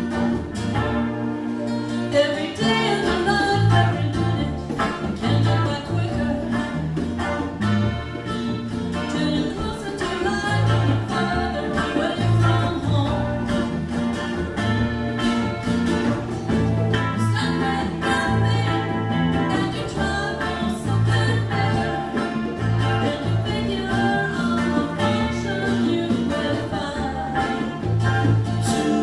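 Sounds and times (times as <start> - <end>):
band playing with guitars: 0.0 - 29.0
person singing: 28.5 - 29.0.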